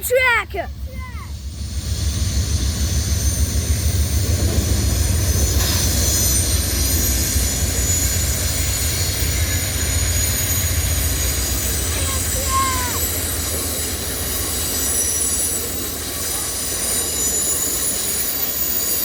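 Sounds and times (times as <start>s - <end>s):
train wheels rolling on rails: 0.0s - 19.0s.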